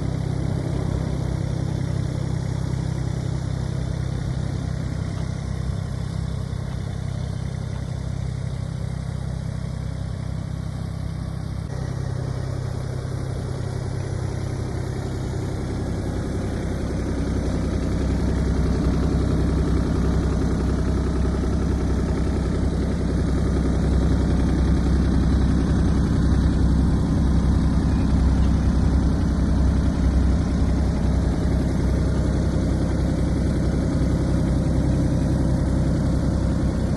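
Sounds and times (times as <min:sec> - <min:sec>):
diesel engine idling: 0:00.0 - 0:36.9.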